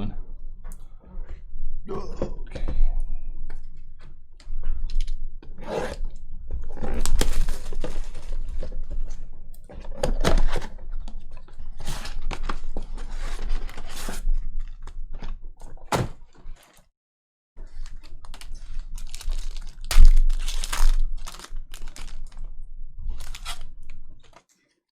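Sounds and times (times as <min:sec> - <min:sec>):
card packs tearing: 0:15.9 - 0:16.2, 0:17.8 - 0:22.4, 0:23.2 - 0:23.7.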